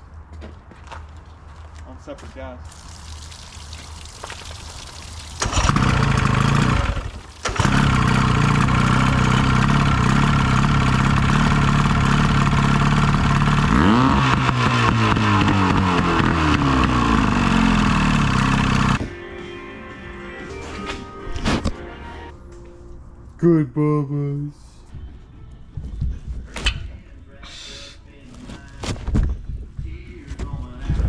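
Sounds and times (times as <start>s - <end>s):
boat motor starting and running: 5.4s - 19.0s.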